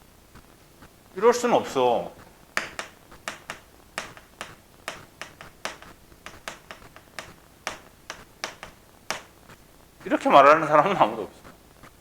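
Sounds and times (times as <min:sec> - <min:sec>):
chalk tapping on board: 0:02.6 - 0:09.6.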